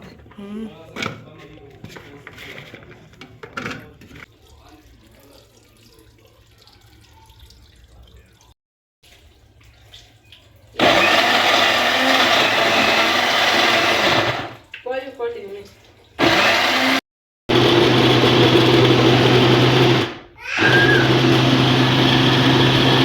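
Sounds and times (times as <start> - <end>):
electric blender running: 10.8 - 14.6, 16.2 - 23.0.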